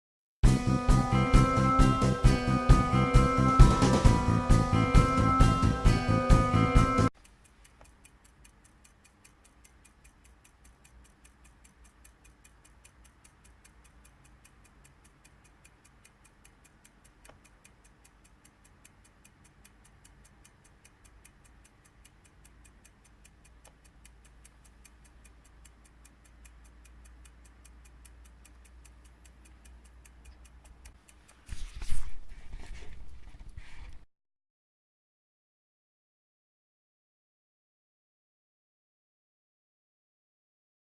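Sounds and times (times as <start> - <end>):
mechanical clock ticking: 7.1 - 31.6.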